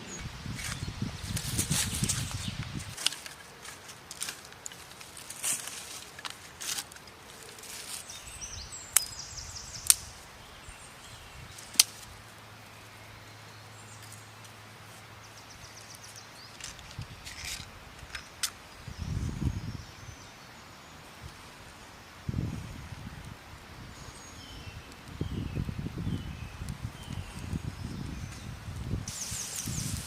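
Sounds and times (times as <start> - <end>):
sharp snaps: 9.8 - 10.2.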